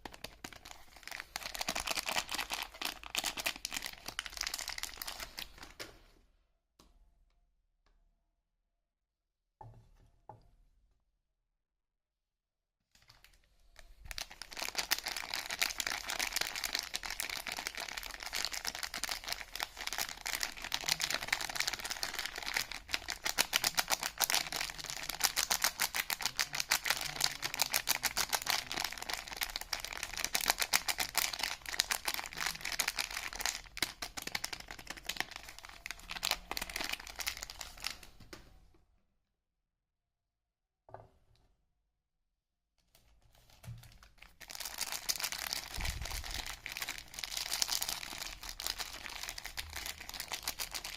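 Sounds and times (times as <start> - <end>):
soap wrapper crinkling and tearing: 0.0 - 5.8, 13.1 - 38.1, 43.4 - 50.9.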